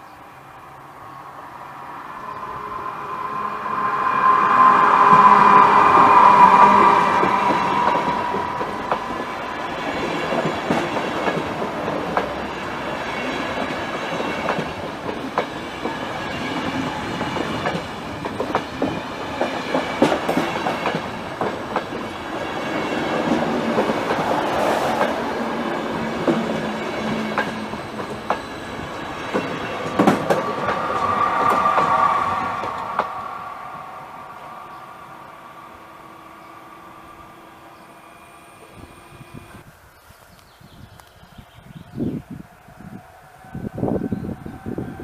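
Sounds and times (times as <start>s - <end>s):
steady whining tone: 0.2s - 11.2s, 21.9s - 39.6s
train wheels rumbling on rails: 0.6s - 39.6s.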